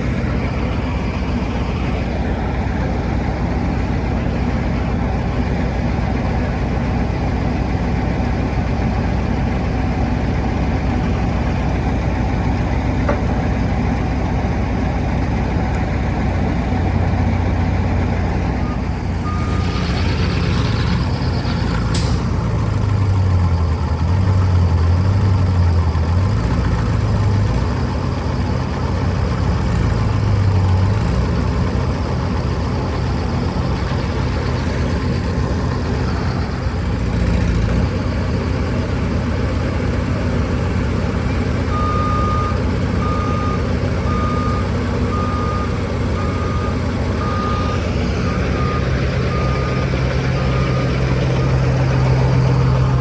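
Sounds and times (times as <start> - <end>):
diesel engine under load: 0.0 - 53.0.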